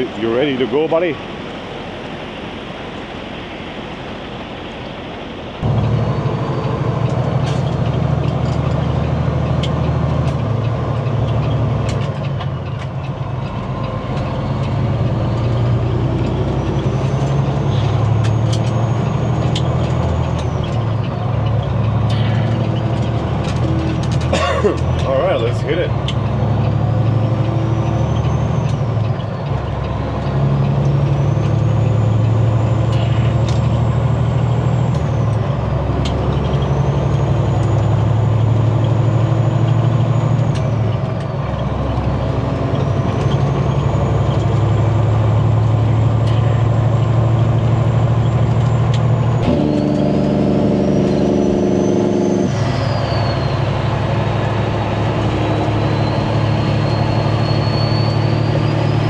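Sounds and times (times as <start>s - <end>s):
diesel truck engine accelerating: 0.0s - 59.0s
turbo whistle: 51.0s - 53.8s, 55.3s - 59.0s.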